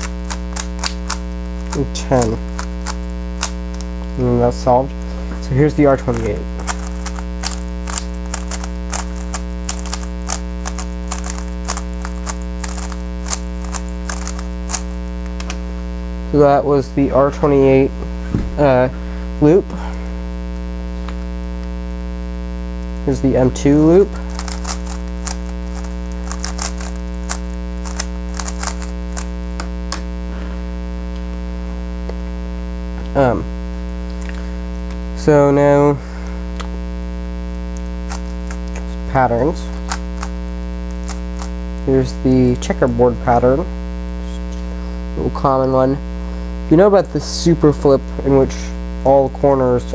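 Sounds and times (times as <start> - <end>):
plastic puzzle cube clicking: 0.0 - 3.9, 6.1 - 15.6, 23.8 - 29.3, 38.1 - 38.8, 39.7 - 41.6
loud electrical hum: 0.0 - 49.9.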